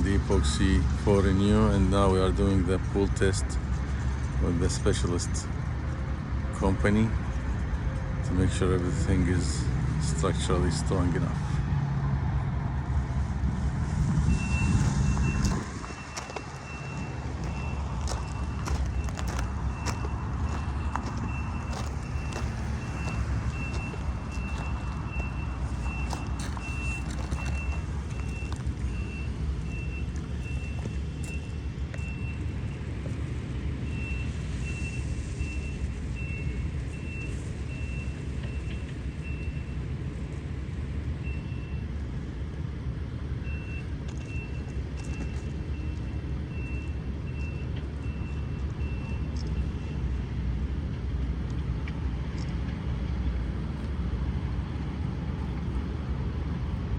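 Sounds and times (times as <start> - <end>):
engine rumbling: 0.0 - 56.9
vehicle backup alarm beeping: 14.2 - 40.3, 41.0 - 42.1, 43.4 - 50.2.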